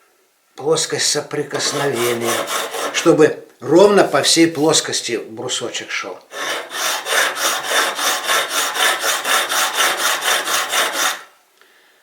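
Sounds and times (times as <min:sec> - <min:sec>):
sharpening stone rasping on steel: 0:01.6 - 0:03.0, 0:06.4 - 0:11.3.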